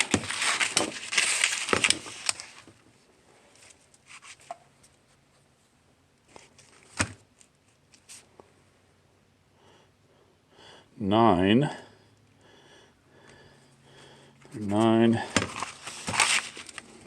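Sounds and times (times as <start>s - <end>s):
sandpaper crinkling: 0.0s - 2.6s, 15.5s - 16.8s.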